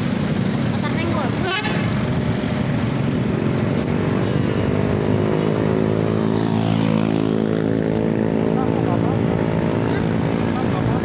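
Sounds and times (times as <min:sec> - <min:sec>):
vehicle engine passing: 0:00.0 - 0:11.0.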